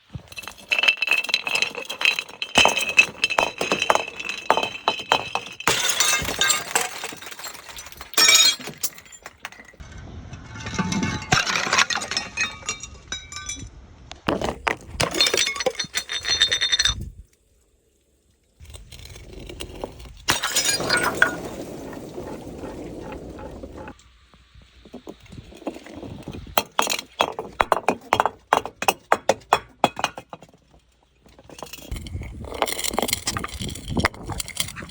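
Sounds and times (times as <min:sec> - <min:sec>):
glass bottles clinking: 0:00.1 - 0:09.8, 0:10.8 - 0:13.7, 0:14.3 - 0:17.1, 0:20.3 - 0:24.0, 0:25.0 - 0:30.6, 0:31.2 - 0:34.9
glass shards crunching: 0:00.1 - 0:09.8, 0:18.6 - 0:22.8, 0:31.4 - 0:34.9
glass shattering: 0:00.1 - 0:09.8, 0:10.7 - 0:13.7, 0:14.3 - 0:17.0, 0:20.3 - 0:24.0.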